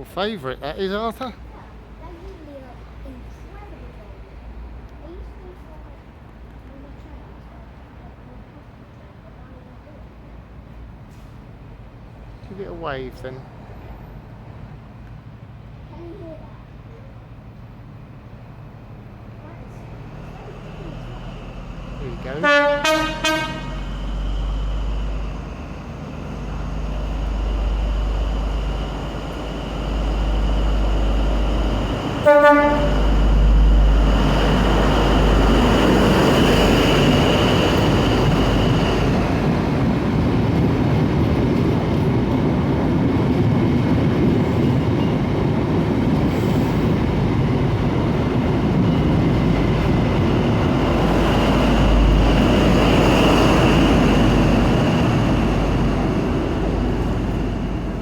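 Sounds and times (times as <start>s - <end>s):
diesel train passing: 0.0s - 58.0s
train horn blast: 22.3s - 24.3s, 32.2s - 33.7s.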